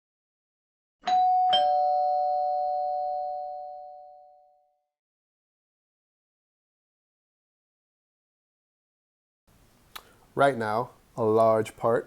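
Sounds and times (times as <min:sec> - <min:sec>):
two-tone doorbell chime: 0:01.0 - 0:04.8.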